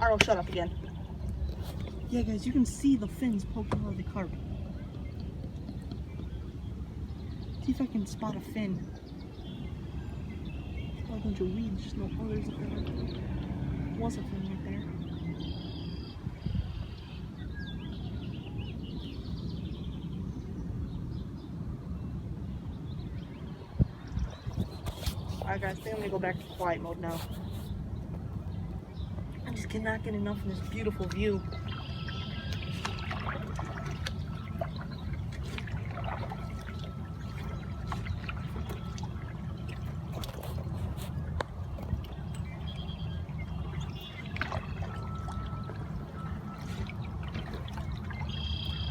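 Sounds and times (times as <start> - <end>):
small birds chirping: 22.5 - 48.9
water dripping off paddle: 30.4 - 48.9.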